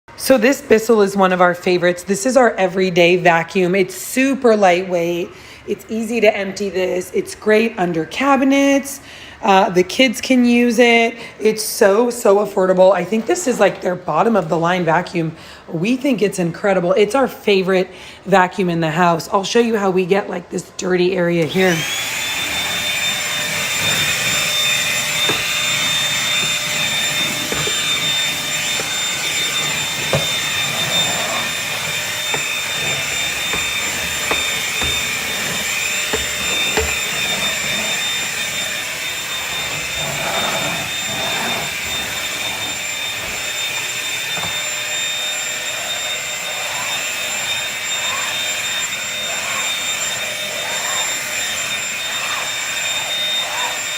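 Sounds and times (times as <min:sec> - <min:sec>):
stick vacuum motor whine: 0:21.4 - 0:53.9.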